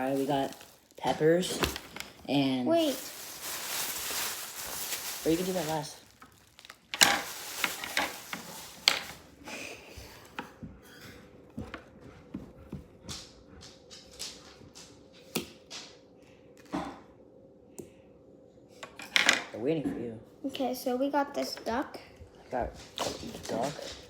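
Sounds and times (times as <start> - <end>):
packaging clicks and crinkles: 0.0 - 9.4
faint steady hum: 0.0 - 24.0.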